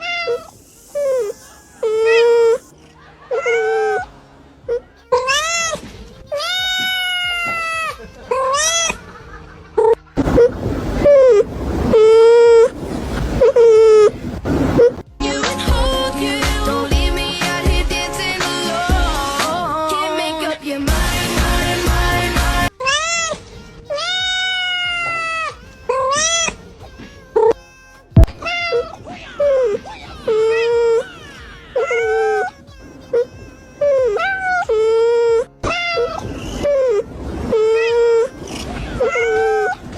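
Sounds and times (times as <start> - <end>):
cat meowing: 0.0 - 0.6, 5.1 - 9.0, 22.8 - 26.7, 28.2 - 32.6, 33.8 - 39.8
music: 0.0 - 10.2, 15.1 - 39.9.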